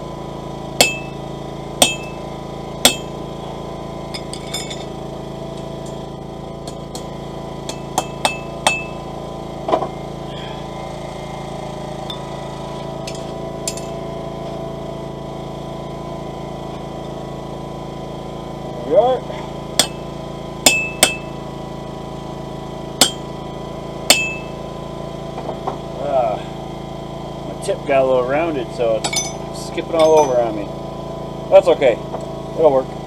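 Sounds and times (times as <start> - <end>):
steady hum: 0.0 - 26.6
hammer striking metal punch: 0.8 - 1.2, 1.8 - 2.2, 2.8 - 3.2, 6.6 - 9.0, 13.0 - 14.0, 19.8 - 21.4, 23.0 - 23.3, 24.1 - 24.6, 29.0 - 30.5.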